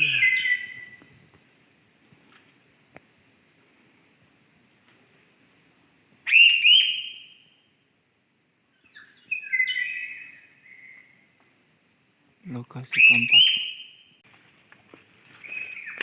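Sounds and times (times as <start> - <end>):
whistled bird-like calls: 0.0 - 1.0, 6.3 - 7.4, 8.9 - 11.1, 13.0 - 14.1.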